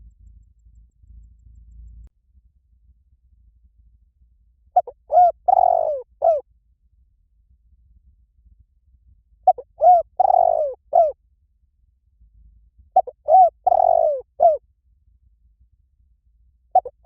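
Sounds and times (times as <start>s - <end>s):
dove cooing: 4.8s - 6.4s, 9.5s - 11.2s, 13.0s - 14.6s, 16.8s - 17.0s.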